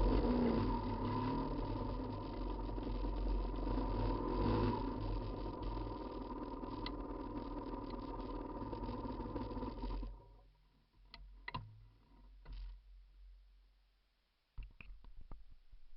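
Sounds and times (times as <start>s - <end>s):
motorcycle engine running: 0.0s - 10.3s
faint clicks and knocks: 11.0s - 12.8s.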